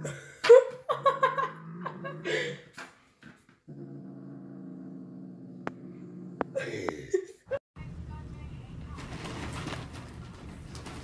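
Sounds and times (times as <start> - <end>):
dog growling: 1.4 - 2.4, 3.7 - 6.8.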